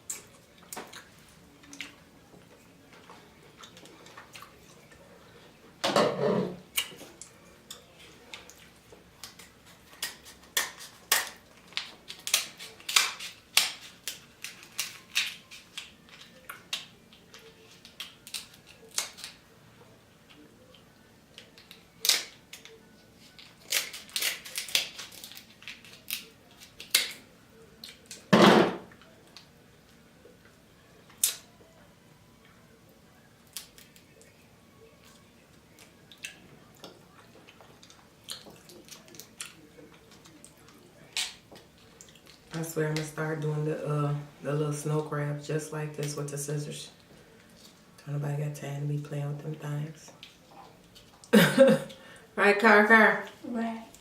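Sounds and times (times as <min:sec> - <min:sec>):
chewing and lip-smacking: 0:00.0 - 0:05.0, 0:35.0 - 0:42.5, 0:50.1 - 0:51.3.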